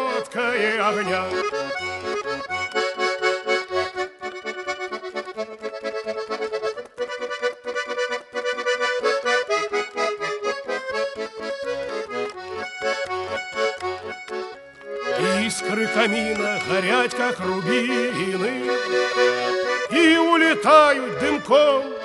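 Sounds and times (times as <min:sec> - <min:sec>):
button accordion playing melody: 0:00.0 - 0:22.0.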